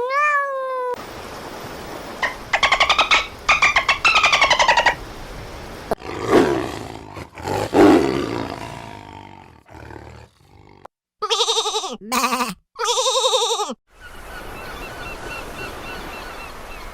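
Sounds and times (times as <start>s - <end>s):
rapid pulsed call: 2.2s - 5.0s
big cat roaring: 6.0s - 10.9s.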